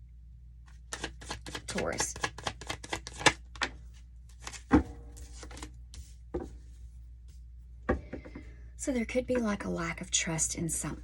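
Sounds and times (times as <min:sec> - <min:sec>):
cards being shuffled: 0:00.7 - 0:06.2.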